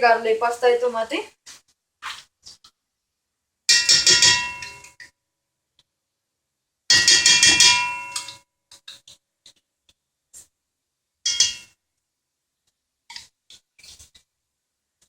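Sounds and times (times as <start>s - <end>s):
utensil clanging against metal pan: 3.7s - 4.9s, 6.9s - 8.4s, 11.3s - 11.7s.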